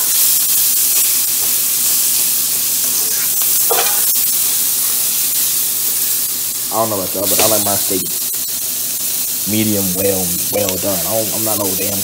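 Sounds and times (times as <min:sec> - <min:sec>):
steak sizzling in a pan: 0:00.0 - 0:12.0.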